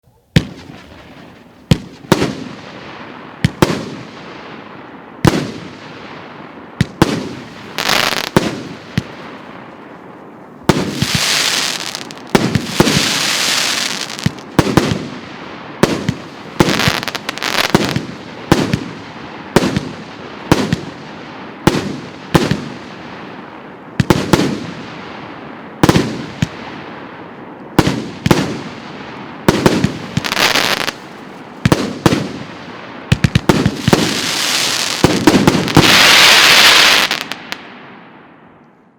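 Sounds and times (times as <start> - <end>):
firework bangs: 0.2 - 4.2, 5.2 - 6.1, 6.8 - 9.9, 10.6 - 21.0, 27.8 - 37.8.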